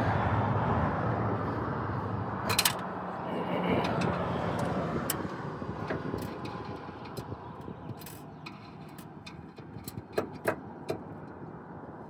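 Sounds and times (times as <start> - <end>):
passing vehicle engine and tyres: 0.0 - 12.0.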